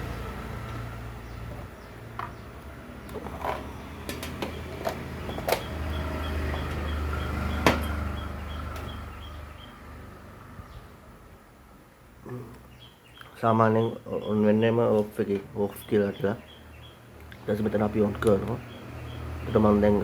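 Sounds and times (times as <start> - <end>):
clicks and knocks: 3.1 - 5.7.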